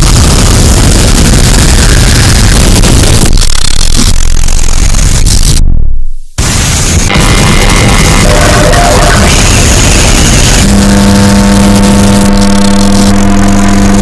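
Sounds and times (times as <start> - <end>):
low droning tone: 0.0 - 14.0
distorted alarm noise: 5.5 - 14.0.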